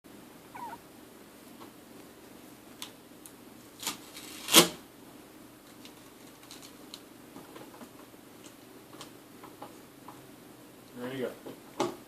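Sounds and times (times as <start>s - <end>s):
puppy squeak: 0.5s - 0.8s.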